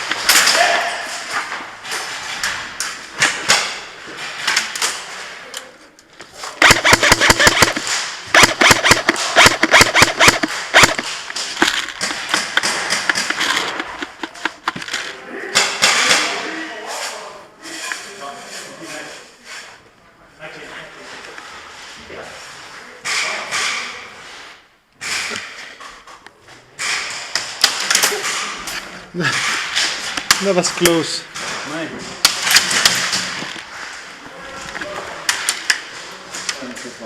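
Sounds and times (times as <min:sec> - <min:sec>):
rustling of movement: 0:00.0 - 0:15.3
airsoft rifle automatic bursts: 0:06.6 - 0:14.7.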